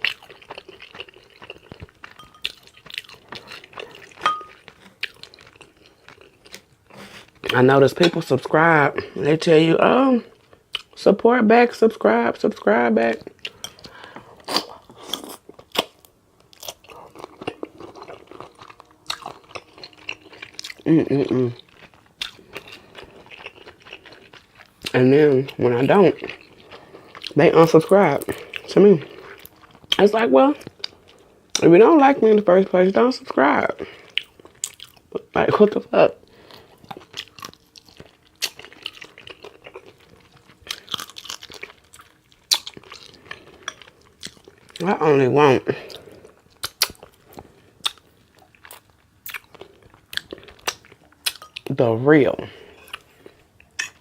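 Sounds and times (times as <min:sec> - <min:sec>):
open-mouth chewing: 0:00.0 - 0:07.6, 0:13.2 - 0:25.6, 0:36.3 - 0:44.8, 0:45.8 - 0:51.7, 0:52.6 - 0:54.0.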